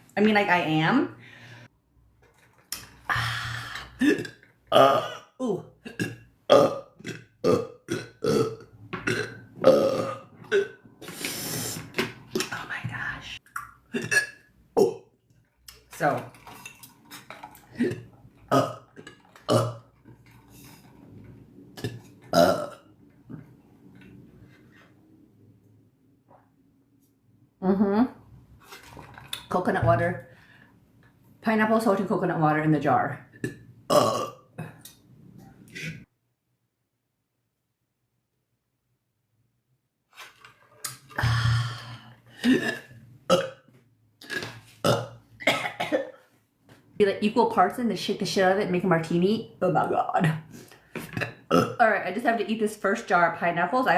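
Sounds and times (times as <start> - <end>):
woman burping loudly: 3.1 - 10.8, 13.8 - 15.1, 17.5 - 19.9, 21.8 - 22.8, 33.4 - 34.8, 41.1 - 43.6, 44.2 - 46.2, 51.1 - 51.9.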